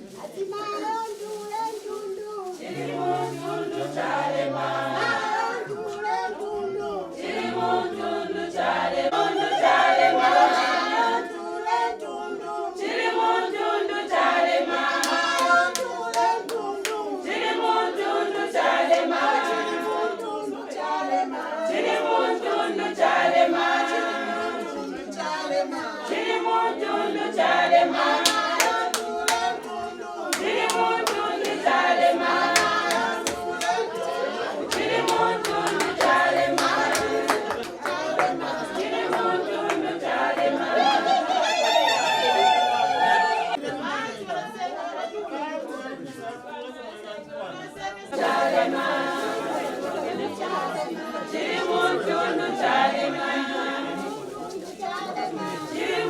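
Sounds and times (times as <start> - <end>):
group singing a cappella: 0.0 - 56.0
rhythmic hand clapping: 13.0 - 20.4, 26.1 - 41.0.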